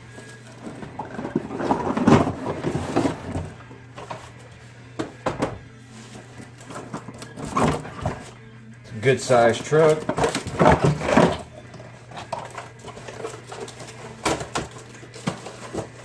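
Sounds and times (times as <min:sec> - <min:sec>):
cardboard packaging rustling: 0:00.0 - 0:04.4, 0:09.3 - 0:16.0.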